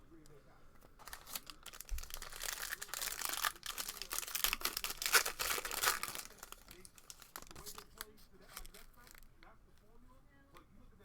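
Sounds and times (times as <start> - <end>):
card pack wrapper crinkling and tearing: 1.0 - 9.3.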